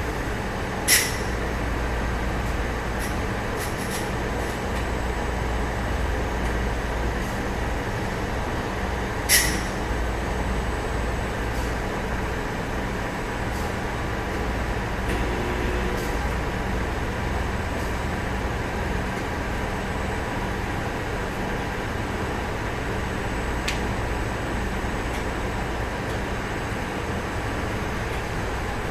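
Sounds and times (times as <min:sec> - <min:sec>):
machine humming: 0:15.0 - 0:17.0.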